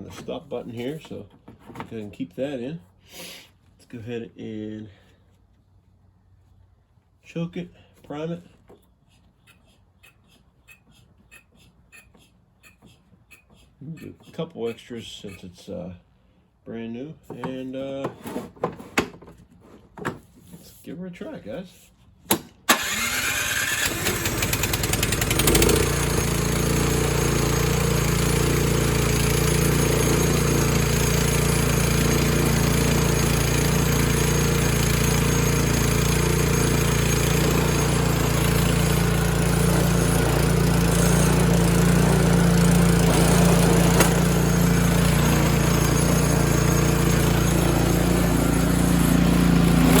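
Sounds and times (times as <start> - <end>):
electric starter cranking: 22.3 - 50.0
snowblower engine running: 22.7 - 50.0.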